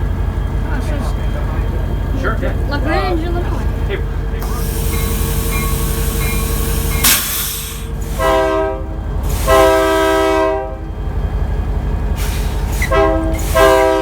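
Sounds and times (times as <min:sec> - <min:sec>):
locomotive air horn blasts: 0:04.4 - 0:10.9, 0:12.8 - 0:14.0.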